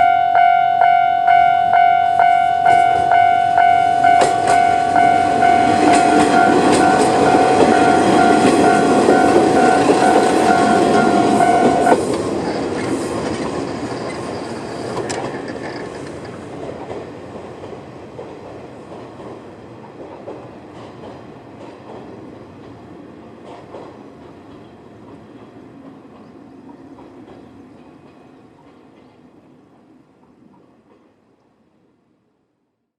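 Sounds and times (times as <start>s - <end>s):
level crossing warning bell: 0.0s - 12.0s
train rumble and wheel clatter: 0.0s - 31.7s.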